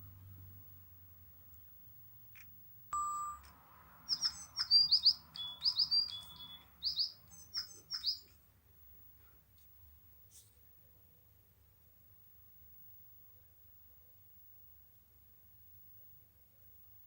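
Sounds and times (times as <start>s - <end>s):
bird chirps and whistles: 4.1s - 8.4s.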